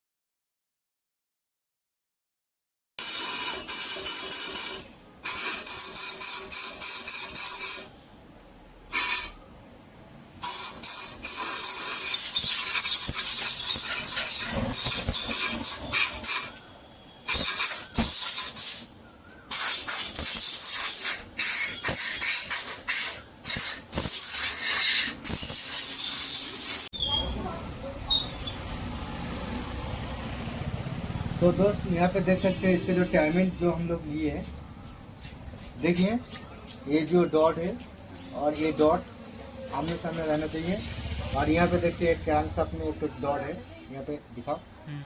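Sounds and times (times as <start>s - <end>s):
pressurised hissing spray: 3.0s - 7.9s, 8.9s - 9.4s, 10.4s - 16.6s, 17.2s - 18.9s, 19.5s - 26.9s.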